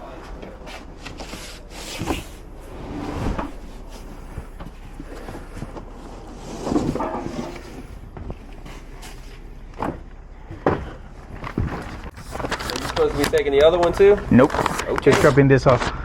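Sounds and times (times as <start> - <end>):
steady low rumble: 0.0 - 14.3
knocks and clunks: 3.2 - 8.6, 9.7 - 13.4.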